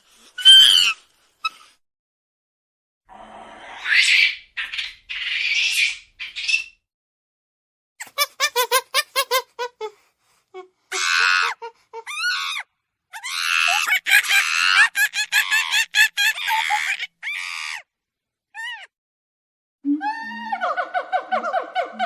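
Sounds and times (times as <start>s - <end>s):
monkey calls: 13.2s - 17.8s.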